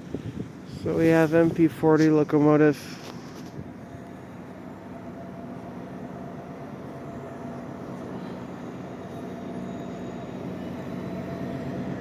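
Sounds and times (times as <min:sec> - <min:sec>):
train engine and rail drone: 0:00.0 - 0:12.0.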